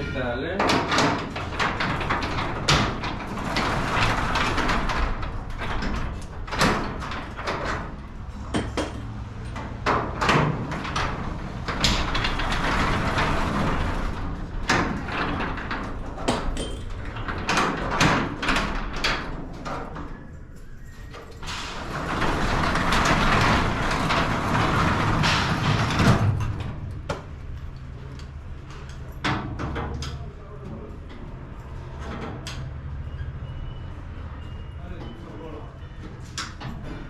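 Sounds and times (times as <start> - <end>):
metal clanks and rattling: 0.0 - 20.1.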